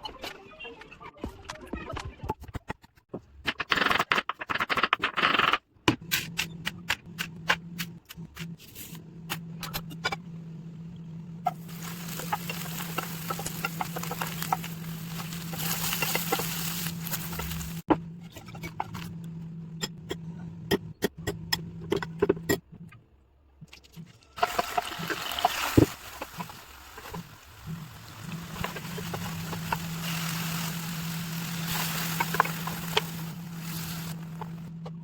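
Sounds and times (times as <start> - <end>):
low hum: 9.0 - 22.9, 24.4 - 35.0.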